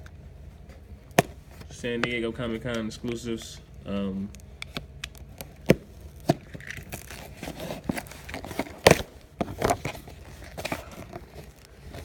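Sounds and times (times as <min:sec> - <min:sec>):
packaging rustling and crinkling: 0:05.1 - 0:12.0.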